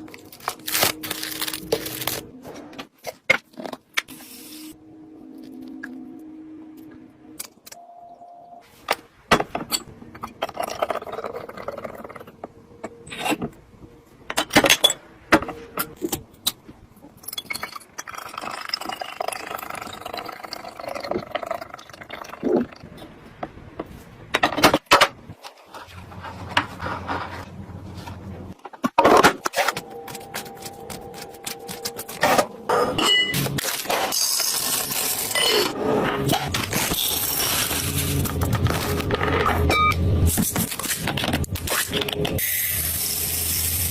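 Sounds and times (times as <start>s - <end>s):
rustling and scraping: 25.3s - 35.4s.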